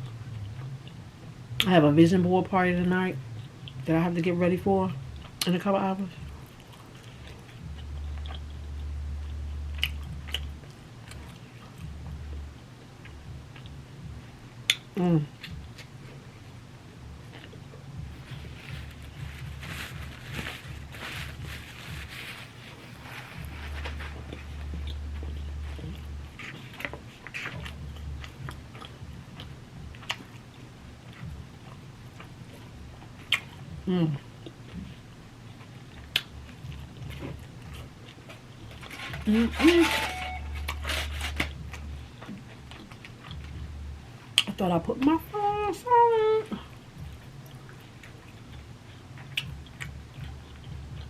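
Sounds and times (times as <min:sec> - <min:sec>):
low hum: 0:00.0 - 0:34.2, 0:36.5 - 0:44.4
person chewing food: 0:06.2 - 0:16.3, 0:17.2 - 0:39.4, 0:40.6 - 0:44.5, 0:46.6 - 0:51.0
wet mouth clicks and smacks: 0:35.6 - 0:37.0.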